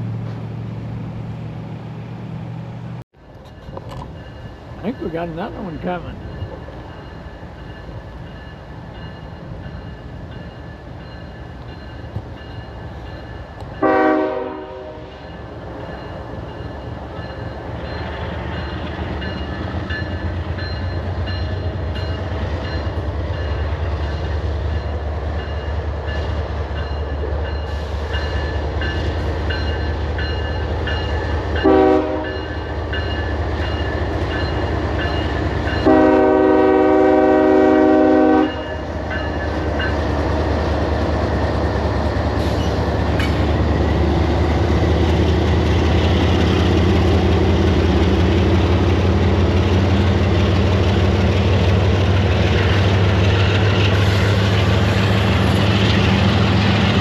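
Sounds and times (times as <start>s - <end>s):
multi-tone air horn blasts: 13.8s - 15.0s, 31.6s - 32.2s, 35.8s - 38.6s.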